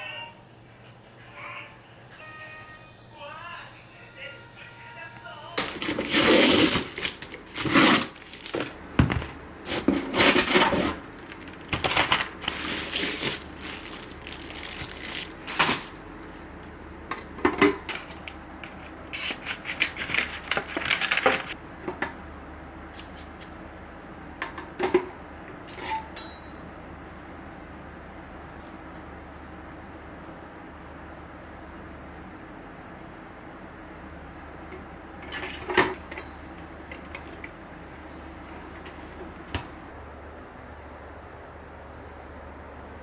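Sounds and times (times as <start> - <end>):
packaging rustling: 5.8 - 8.8, 9.7 - 16.0
knives clinking and clattering: 12.5 - 15.3.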